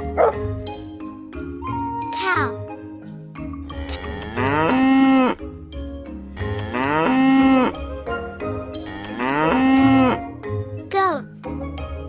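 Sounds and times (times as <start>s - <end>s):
cow mooing: 3.7s - 5.4s, 6.4s - 7.8s, 8.8s - 10.2s.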